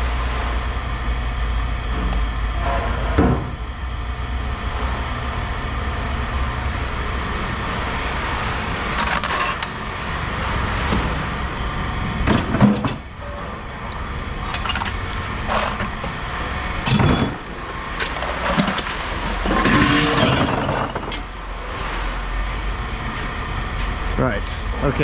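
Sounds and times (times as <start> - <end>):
low engine rumble: 0.0 - 25.0
metal knocks and clanks: 12.2 - 13.4, 16.8 - 21.3.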